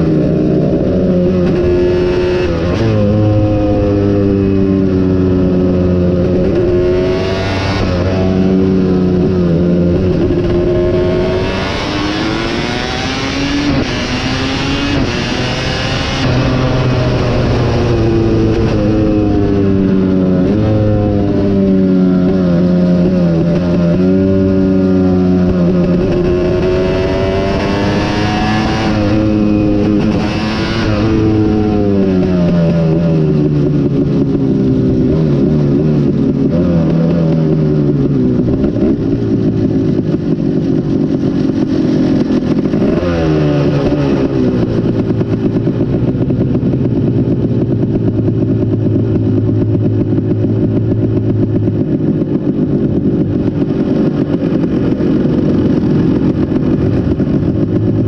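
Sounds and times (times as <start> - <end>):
motocross engine revving: 9.9 - 33.0.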